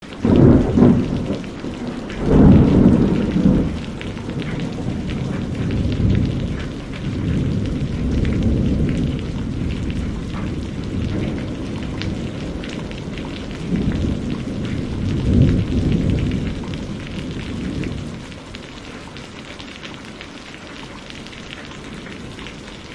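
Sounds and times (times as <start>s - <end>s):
thunder rumbling: 0.0s - 19.1s, 21.2s - 22.9s
steady rain: 0.0s - 22.9s.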